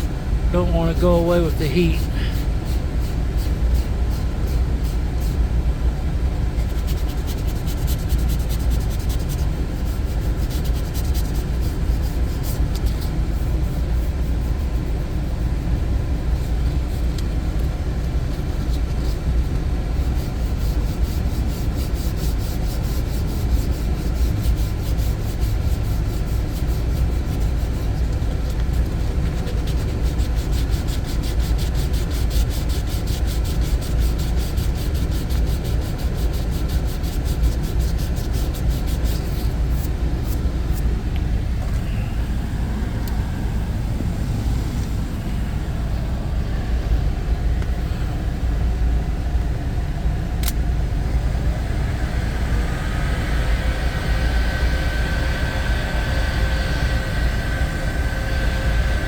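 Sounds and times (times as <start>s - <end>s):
sandpaper scrubbing: 6.6s - 40.9s.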